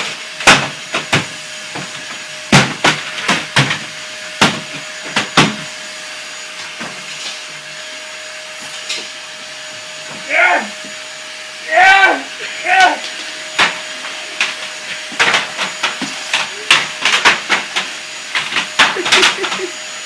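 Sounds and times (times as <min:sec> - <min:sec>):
vacuum cleaner running: 0:00.0 - 0:20.0
sharp knocks and bangs: 0:00.4 - 0:05.7, 0:13.1 - 0:19.5.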